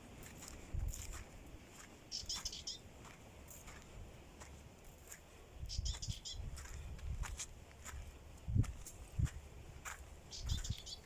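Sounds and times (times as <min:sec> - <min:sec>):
high bird chirps: 0:02.1 - 0:02.8, 0:05.7 - 0:06.5, 0:10.3 - 0:11.0.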